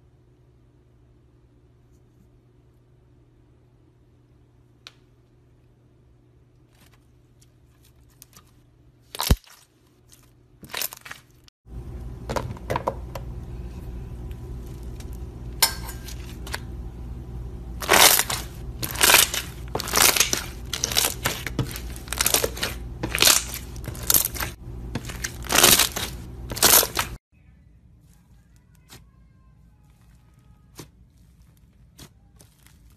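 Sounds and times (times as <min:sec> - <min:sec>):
crunchy slime crackling: 0:06.7 - 0:11.5, 0:17.8 - 0:27.2, 0:29.8 - 0:32.9
steady low hum: 0:11.7 - 0:32.9.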